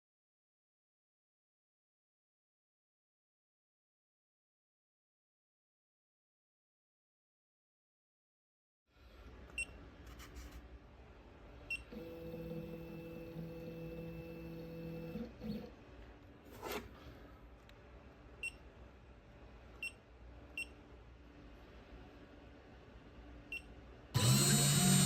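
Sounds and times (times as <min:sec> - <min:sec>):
stepper motors humming: 0:24.2 - 0:25.0.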